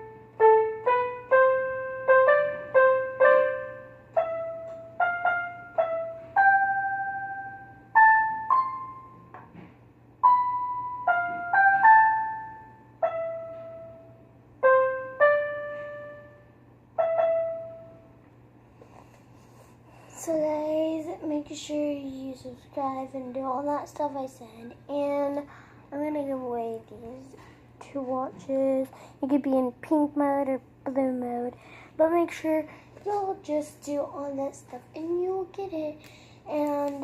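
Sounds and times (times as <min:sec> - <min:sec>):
piano-like melody: 0:00.0 - 0:18.3
steady low hum: 0:00.0 - 0:37.0.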